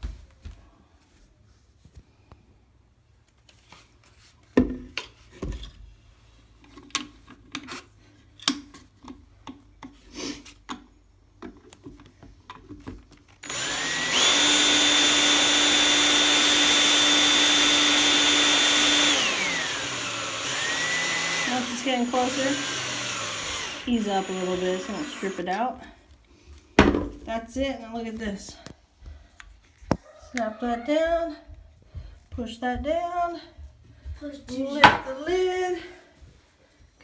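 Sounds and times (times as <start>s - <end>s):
power drill driving screw: 13.4s - 25.6s.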